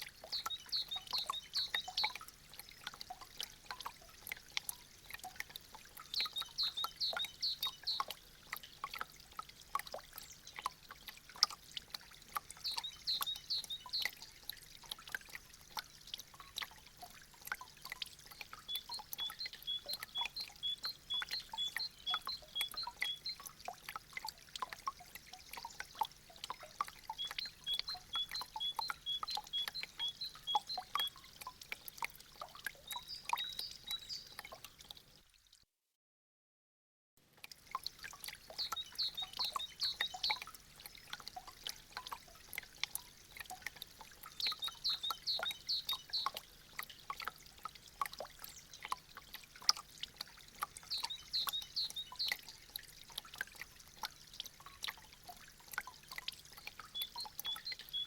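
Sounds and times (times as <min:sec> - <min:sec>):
water dripping: 0:00.0 - 0:35.6, 0:37.2 - 0:58.0.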